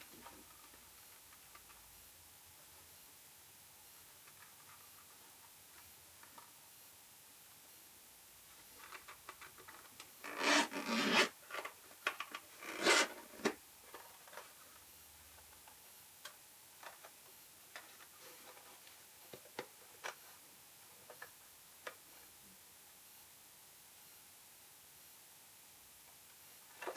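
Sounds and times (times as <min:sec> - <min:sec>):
packaging rubbing and scraping: 0:10.2 - 0:11.4, 0:12.6 - 0:13.4.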